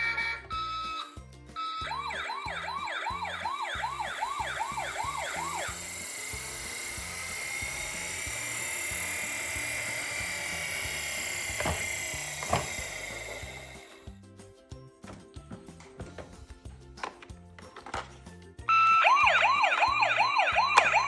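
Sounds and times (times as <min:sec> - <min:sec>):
electronic toy siren yelping: 0:01.6 - 0:13.9, 0:18.7 - 0:21.0
high whirring hiss: 0:05.3 - 0:14.1.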